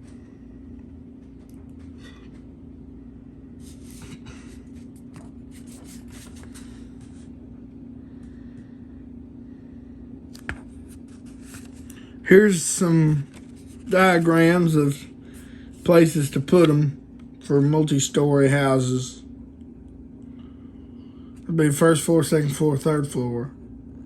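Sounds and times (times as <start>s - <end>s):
steady low hum: 0.0s - 24.0s
paper rustling and crackling: 3.6s - 7.3s, 10.3s - 12.1s, 13.1s - 13.9s.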